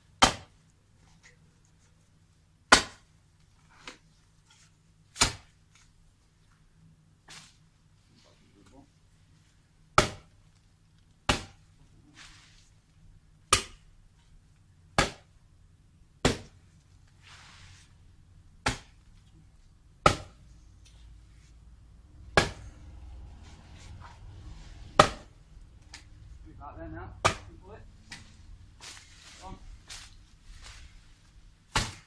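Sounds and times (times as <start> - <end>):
tool chopping into wood: 0.2 - 0.5, 2.7 - 3.1, 5.2 - 5.5, 10.0 - 10.3, 11.3 - 11.6, 13.5 - 13.9, 15.0 - 15.3, 16.2 - 16.6, 18.6 - 19.0, 20.0 - 20.4, 22.4 - 22.7, 25.0 - 25.3, 27.2 - 28.3, 31.7 - 32.0.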